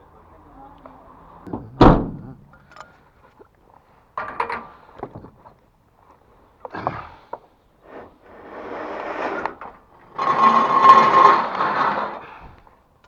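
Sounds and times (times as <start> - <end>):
heavy thump: 1.5 - 2.5
knocks and clattering: 1.5 - 2.8.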